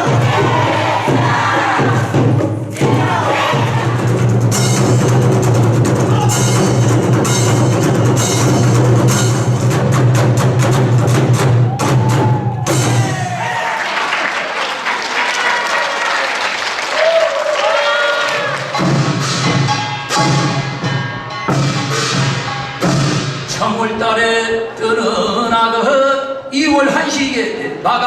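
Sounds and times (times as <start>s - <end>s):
drums and gongs playing: 0.0s - 13.6s, 18.3s - 23.6s
audience applause: 11.9s - 18.8s.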